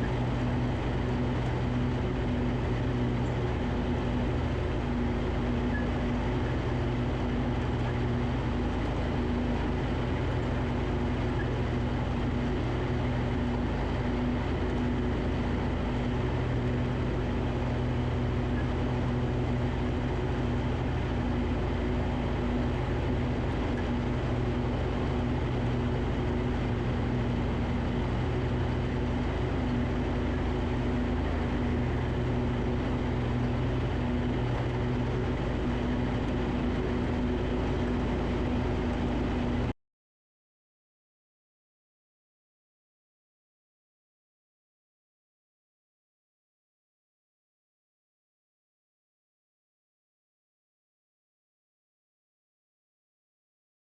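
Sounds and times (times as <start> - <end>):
riding mower engine droning: 0.0 - 39.7.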